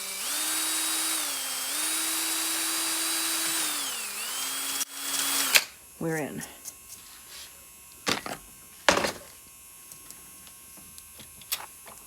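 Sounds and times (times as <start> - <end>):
power drill boring into plastic: 0.0 - 5.7.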